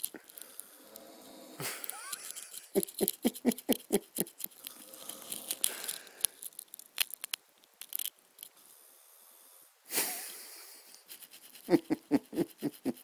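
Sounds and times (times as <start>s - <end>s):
small clicks: 1.7s - 8.6s
snoring breath: 4.7s - 6.2s.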